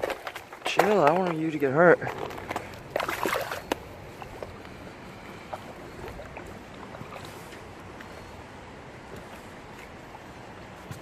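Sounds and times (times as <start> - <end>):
creek water running: 0.7 - 9.0.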